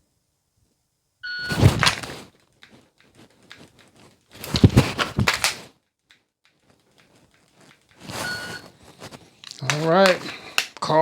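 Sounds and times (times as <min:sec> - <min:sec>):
knocks and rattles of a pistol: 0:01.6 - 0:08.1, 0:09.0 - 0:11.0
pistol handling clicks: 0:05.3 - 0:07.9, 0:09.4 - 0:10.8.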